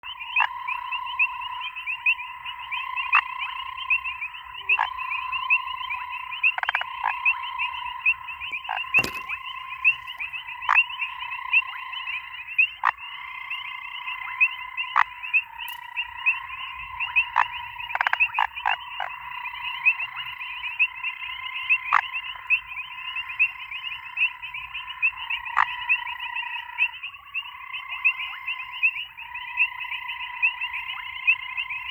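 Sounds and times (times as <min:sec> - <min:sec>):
frog chorus of pulsing trills: 0:00.1 - 0:31.9
sharp frog clicks: 0:08.6 - 0:10.8.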